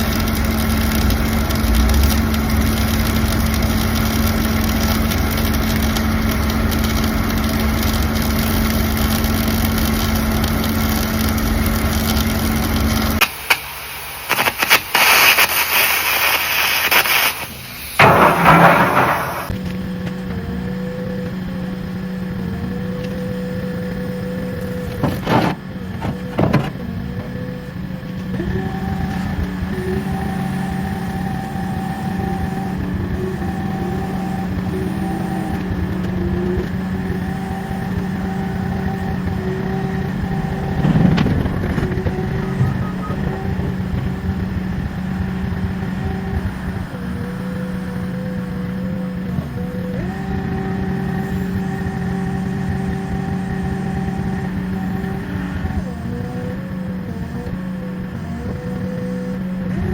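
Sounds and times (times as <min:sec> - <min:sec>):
engine idling: 0:00.0 - 0:14.3, 0:17.5 - 0:59.9
short scraping bursts: 0:14.3 - 0:19.5
sustained held notes: 0:27.0 - 0:55.2.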